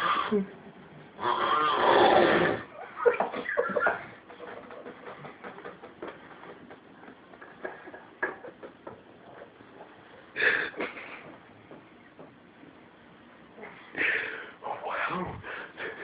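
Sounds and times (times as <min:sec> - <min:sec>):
loud snort: 0:01.2 - 0:02.7
faint clicks and rustles: 0:03.7 - 0:10.2
man breathing noisily asleep: 0:10.3 - 0:11.2, 0:13.6 - 0:16.0.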